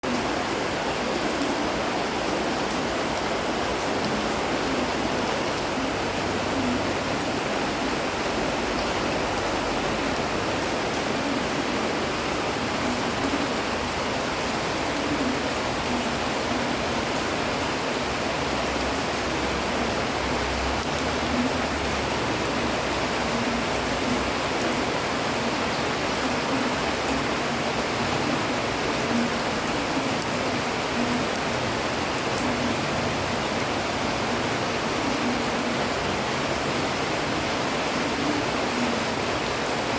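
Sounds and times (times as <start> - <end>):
rain on tree leaves: 0.0 - 39.9.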